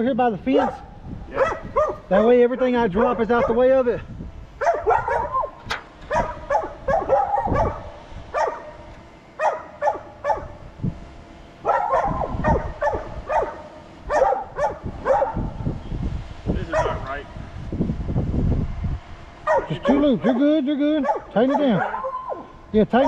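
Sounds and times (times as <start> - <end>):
dog barking: 0.6 - 2.1, 3.3 - 3.7, 4.6 - 10.6, 11.6 - 15.6, 16.7 - 17.1, 19.4 - 22.5.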